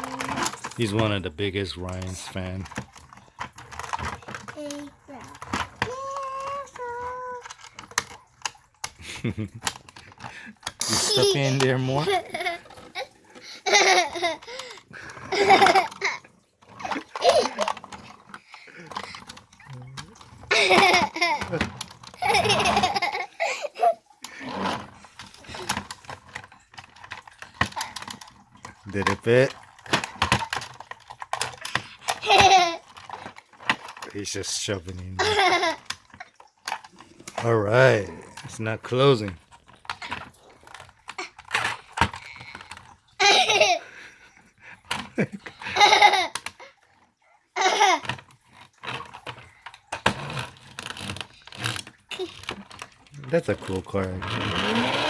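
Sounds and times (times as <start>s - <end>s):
plastic toys clicking and knocking: 0.0s - 55.0s
child vocal sounds: 4.6s - 7.6s
child laughing: 5.8s - 7.4s, 10.8s - 17.8s, 20.5s - 24.1s, 32.2s - 32.9s, 35.2s - 35.9s, 43.2s - 43.9s, 45.2s - 46.4s, 47.6s - 48.1s.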